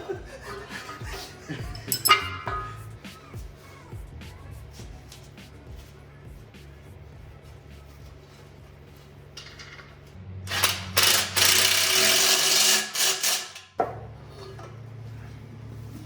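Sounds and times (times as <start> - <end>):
ratchet wrench clicking: 10.5 - 13.6.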